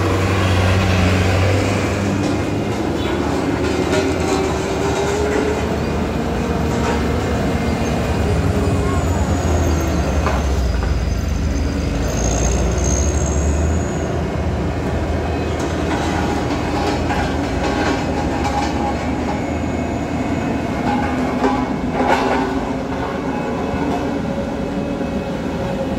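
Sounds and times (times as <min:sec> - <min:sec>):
diesel truck engine rumbling: 0:00.0 - 0:23.6
high thin squeal: 0:08.7 - 0:14.2.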